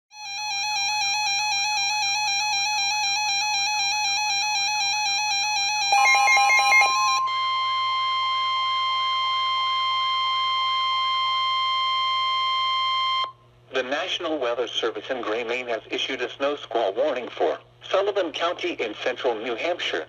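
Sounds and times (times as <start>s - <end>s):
electronic warbling alarm: 5.7s - 9.4s
steady attention tone: 5.9s - 8.2s.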